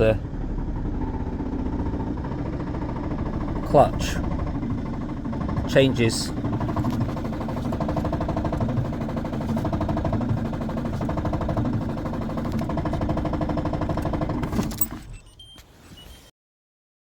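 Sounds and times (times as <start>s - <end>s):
diesel engine idling with knock: 0.0s - 15.1s.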